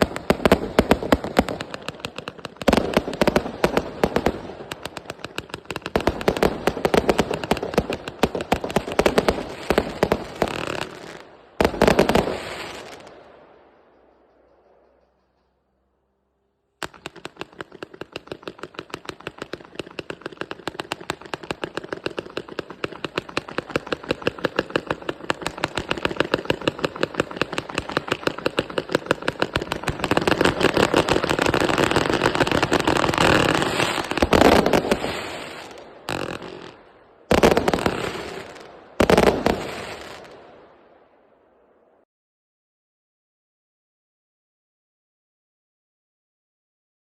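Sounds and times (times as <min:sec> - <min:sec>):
loud firework volleys: 0:00.0 - 0:13.6, 0:16.8 - 0:41.1
firework cake firing shots: 0:16.8 - 0:40.4.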